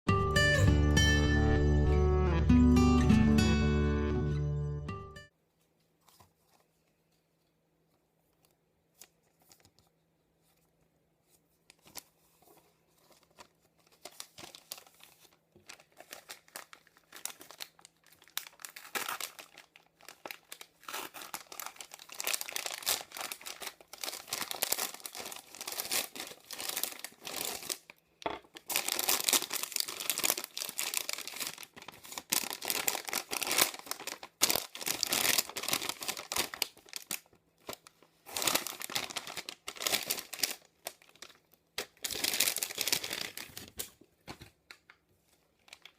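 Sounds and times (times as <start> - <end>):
packaging crinkling and tearing: 11.7 - 45.9.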